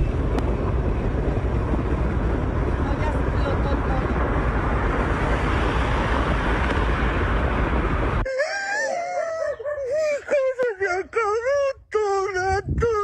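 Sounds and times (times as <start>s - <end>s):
roar of gas fire: 0.0s - 8.3s
person wailing in a high voice: 8.3s - 13.0s.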